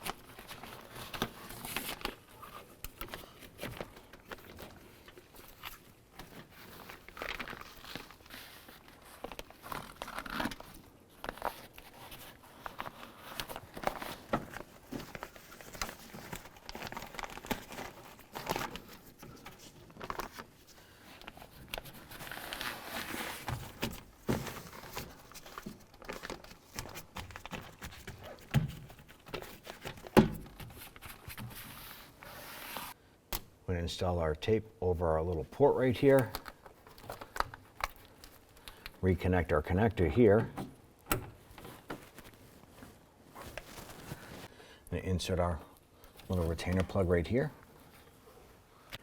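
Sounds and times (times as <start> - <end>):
plastic sheet crinkling: 0.0 - 33.0, 41.4 - 44.5.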